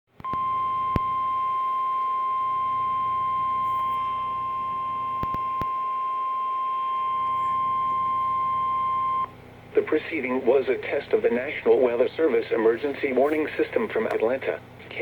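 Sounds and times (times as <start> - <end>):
steady alarm tone: 0.3 - 9.3.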